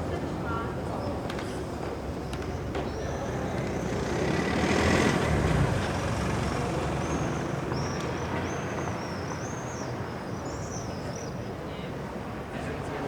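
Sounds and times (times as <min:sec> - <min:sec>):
traffic roar: 0:01.7 - 0:09.1
large vehicle passing: 0:03.6 - 0:07.8.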